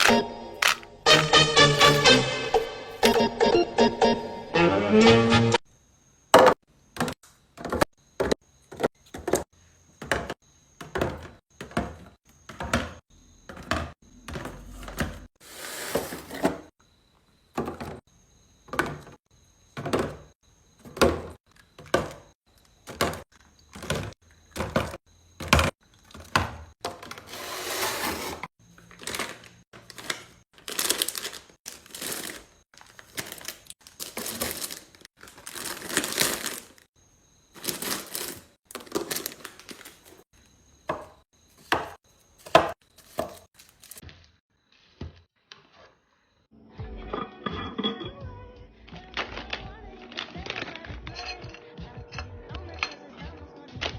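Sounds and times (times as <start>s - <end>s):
items knocking onto fridge shelves: 6.3s - 16.8s, 17.5s - 18.1s, 18.7s - 19.2s, 19.8s - 27.3s
rustling of groceries: 14.4s - 16.8s, 25.9s - 36.9s, 37.5s - 40.3s, 42.4s - 46.2s, 48.8s - 51.6s.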